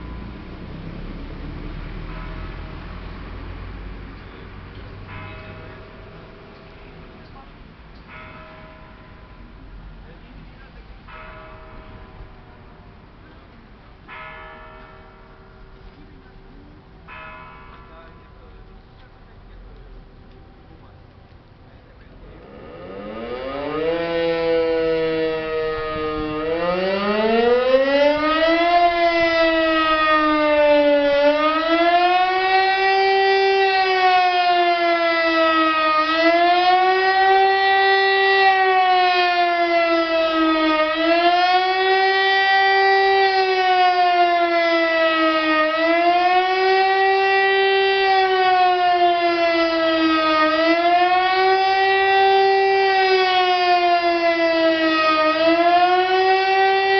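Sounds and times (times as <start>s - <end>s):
electromechanical siren wailing: 22.2s - 56.9s.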